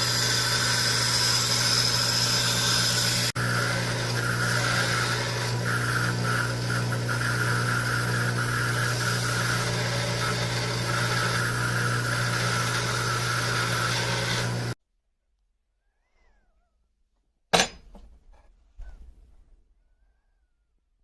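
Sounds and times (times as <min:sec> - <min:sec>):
power tool motor humming: 0:00.0 - 0:14.8.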